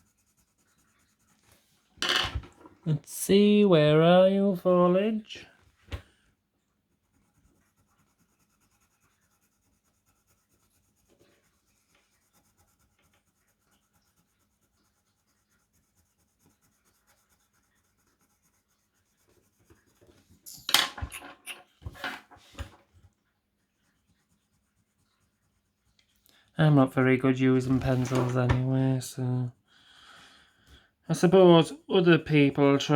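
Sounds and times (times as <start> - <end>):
pencil scratching on paper: 0.0 - 1.9, 6.8 - 20.4, 23.7 - 26.0.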